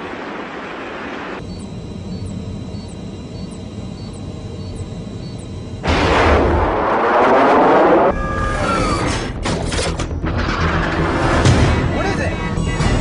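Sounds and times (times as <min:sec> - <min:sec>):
battle booms and blasts: 0:05.8 - 0:08.2
music: 0:08.1 - 0:13.0.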